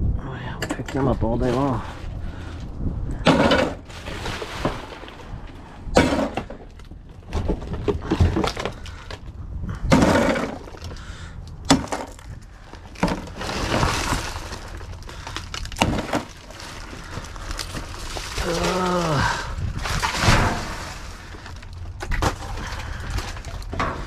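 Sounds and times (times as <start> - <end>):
scrap clattering in a dumpster: 3.2 - 9.2, 9.8 - 11.0, 12.8 - 24.0.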